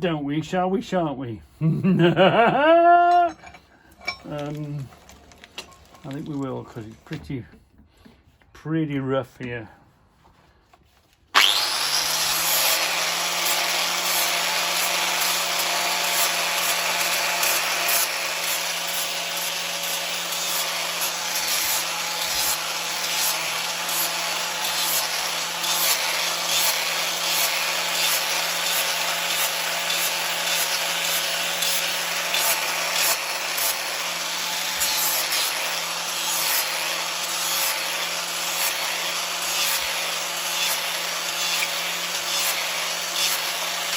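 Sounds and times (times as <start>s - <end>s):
power tool motor whine: 11.3s - 43.9s
grinding steel rasp: 11.4s - 43.9s.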